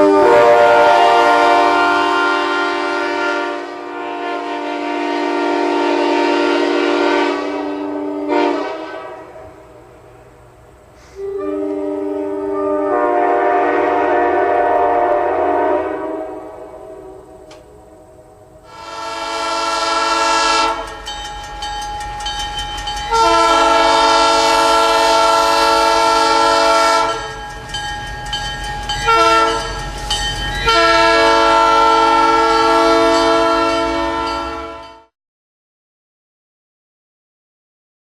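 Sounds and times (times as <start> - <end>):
locomotive air horn blasts: 0.0 - 9.8, 11.0 - 21.0, 23.1 - 27.3, 29.0 - 30.0, 30.6 - 35.1.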